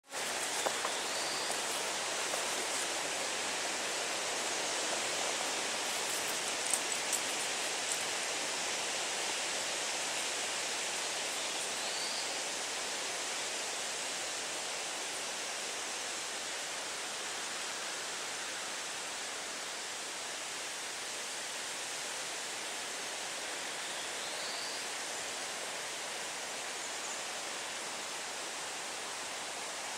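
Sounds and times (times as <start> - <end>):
wind rustling leaves: 0.0 - 29.9.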